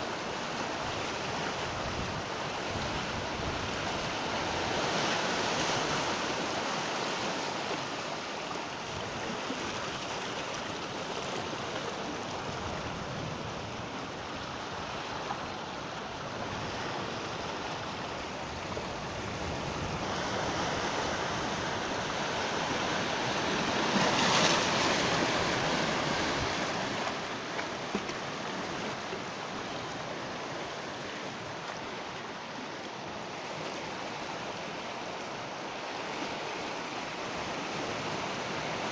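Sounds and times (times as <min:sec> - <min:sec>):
sea waves breaking on shore: 0:00.0 - 0:38.9.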